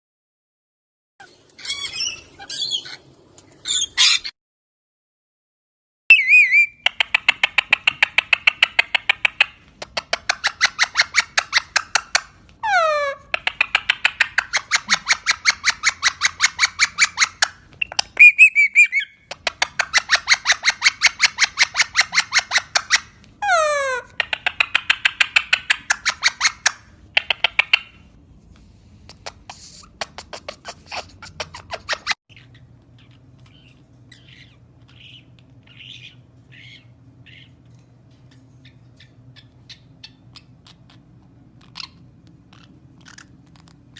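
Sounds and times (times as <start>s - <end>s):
parrot rapid clicking calls: 6.2s - 12.4s, 13.2s - 23.2s, 24.1s - 28.0s.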